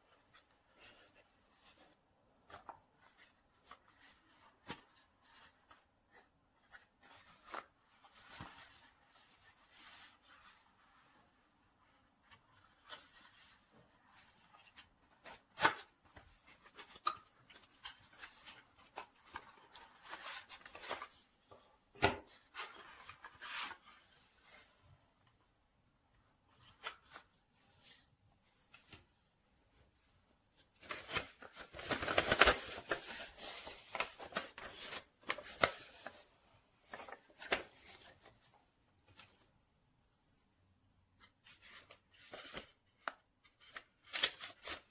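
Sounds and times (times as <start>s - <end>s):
packaging rustling: 30.8s - 36.3s.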